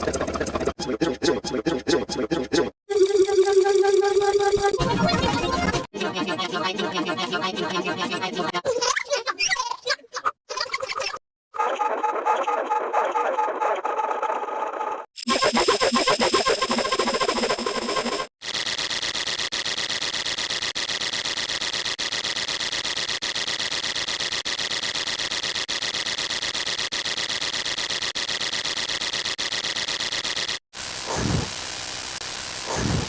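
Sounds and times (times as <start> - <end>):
mechanical noise with high whine: 18.5 - 33.0.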